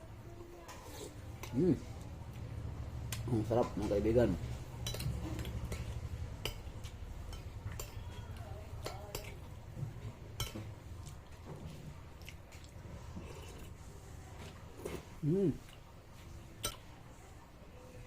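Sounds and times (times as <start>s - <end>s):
utensils clinking against a bowl: 3.2s - 11.8s, 16.6s - 17.0s
eating sounds: 10.9s - 13.8s.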